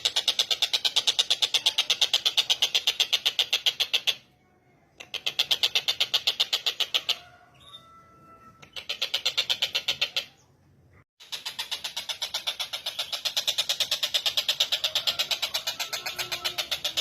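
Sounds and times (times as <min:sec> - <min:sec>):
bird rattling trills: 0:00.0 - 0:04.2, 0:11.2 - 0:17.0
faint bird chirps: 0:00.0 - 0:17.0.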